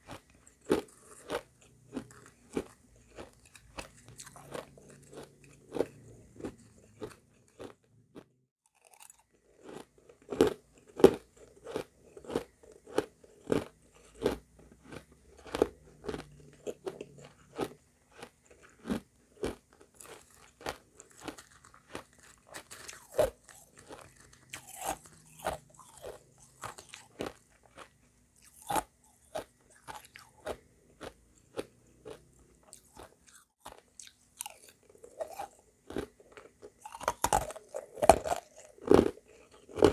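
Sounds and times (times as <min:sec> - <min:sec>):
person crunching ice: 0:08.8 - 0:33.4.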